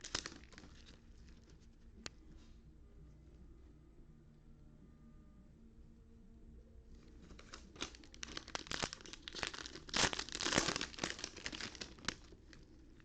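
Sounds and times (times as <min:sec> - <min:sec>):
plastic wrappers crinkling and tearing: 0:00.0 - 0:01.6, 0:07.0 - 0:13.0.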